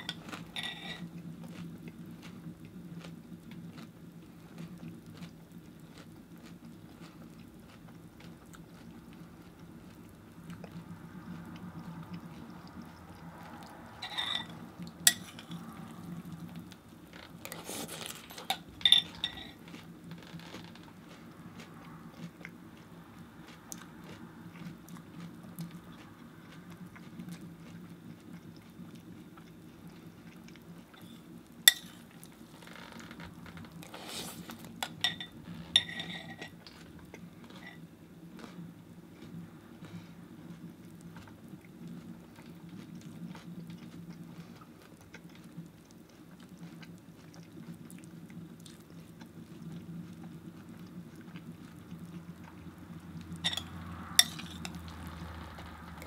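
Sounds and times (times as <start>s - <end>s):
metal spoon clinking on bowl: 0.0s - 1.0s, 14.0s - 15.6s, 18.5s - 19.5s, 31.0s - 32.0s, 34.9s - 36.5s, 53.4s - 54.8s
spoon scraping: 0.0s - 1.1s, 14.0s - 16.2s, 17.4s - 19.6s, 31.0s - 32.2s, 33.9s - 36.6s, 53.4s - 55.2s
chewing cereal: 0.0s - 56.0s
steady low hum: 0.0s - 56.0s.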